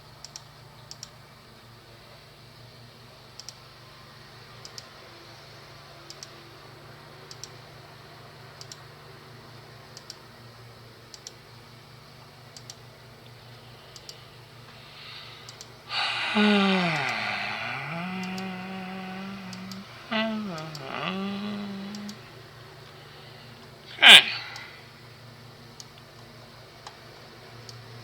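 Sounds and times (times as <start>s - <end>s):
computer mouse clicking: 0.2s - 1.2s, 3.4s - 3.6s, 6.1s - 6.3s, 7.3s - 7.6s, 8.6s - 8.8s, 11.1s - 11.4s, 12.5s - 12.8s, 13.9s - 14.3s
low steady hum: 12.1s - 26.7s.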